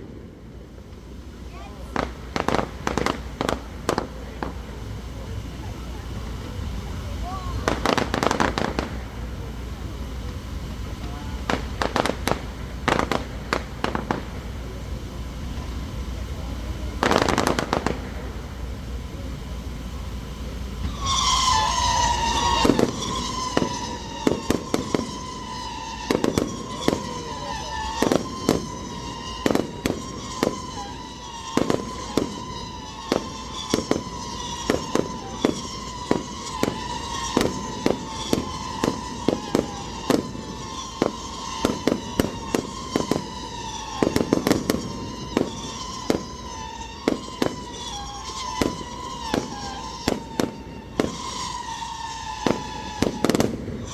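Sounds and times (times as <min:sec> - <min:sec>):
fireworks bangs and crackles: 0:00.0 - 0:53.9
high whistle-like tone: 0:20.7 - 0:53.9.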